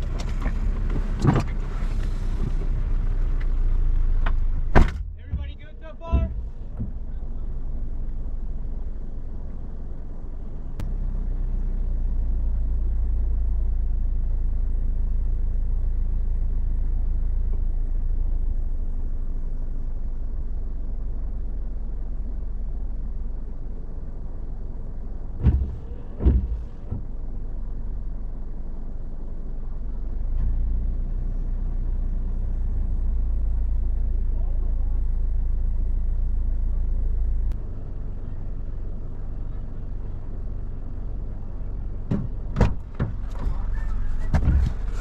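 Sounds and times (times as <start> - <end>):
car road and engine rumble: 0.0 - 45.0
sharp knocks: 25.4 - 27.1.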